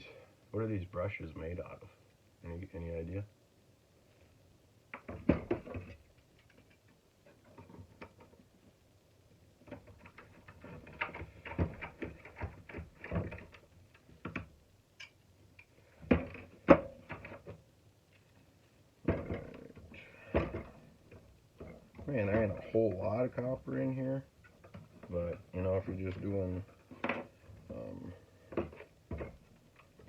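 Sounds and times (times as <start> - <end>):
tools and small parts clattering: 5.0 - 8.6, 9.6 - 23.2, 24.3 - 30.0.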